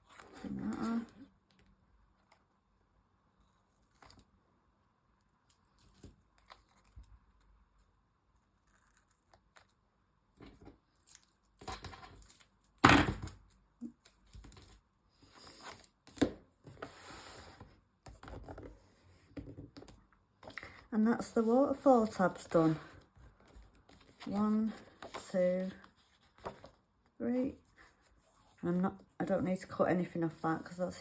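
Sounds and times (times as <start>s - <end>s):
paper rustling: 21.4s - 26.8s.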